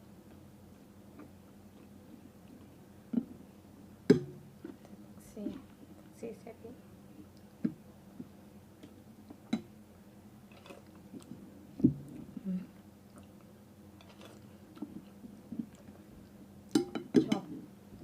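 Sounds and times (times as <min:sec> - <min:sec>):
person chewing: 0:10.5 - 0:16.8.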